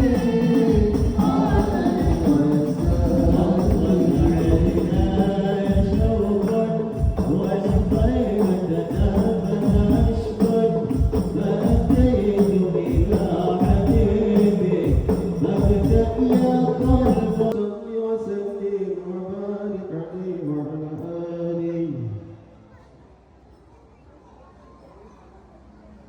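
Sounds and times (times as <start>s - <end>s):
frame drums in steady rhythm: 0.0s - 17.5s
people singing: 0.0s - 22.0s.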